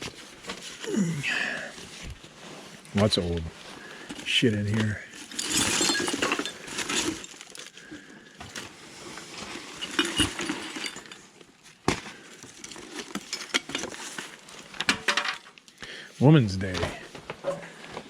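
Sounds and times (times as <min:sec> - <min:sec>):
handling noise: 0:01.9 - 0:15.4
small hard objects clinking: 0:04.2 - 0:11.4, 0:12.1 - 0:15.7.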